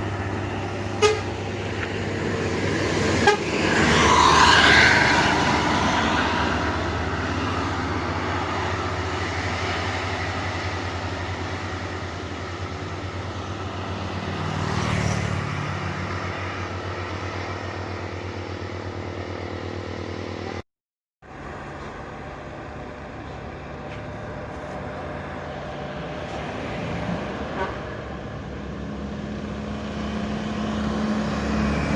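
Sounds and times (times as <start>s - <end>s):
heavy diesel engine under load: 0.0s - 20.6s, 21.2s - 31.9s
vehicle passing close: 1.6s - 11.6s, 13.6s - 17.6s, 24.4s - 31.9s.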